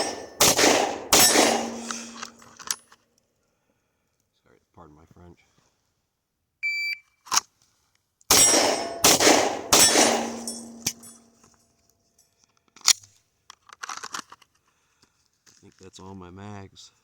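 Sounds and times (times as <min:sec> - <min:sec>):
pistol shots with ringing tail: 0:00.0 - 0:02.4, 0:08.3 - 0:11.2.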